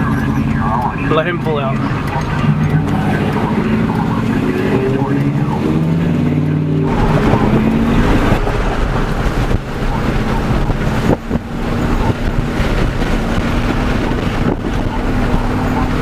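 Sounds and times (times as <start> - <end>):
car engine hum: 0.0 - 16.0
road noise: 0.0 - 16.0
wind buffeting microphone: 0.0 - 16.0.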